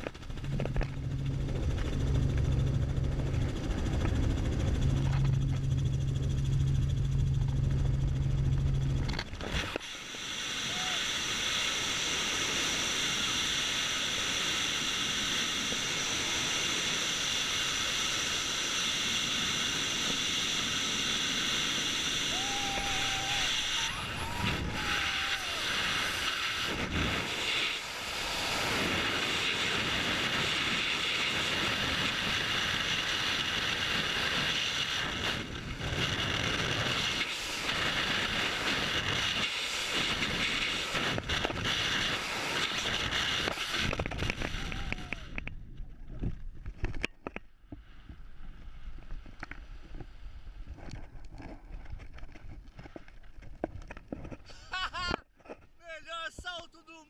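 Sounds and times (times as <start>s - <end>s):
helicopter engine and rotor: 0.0s - 44.8s.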